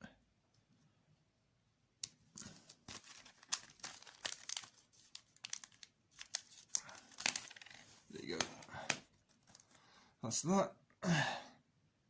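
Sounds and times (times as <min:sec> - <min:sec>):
packaging crinkling and tearing: 0:02.4 - 0:09.8.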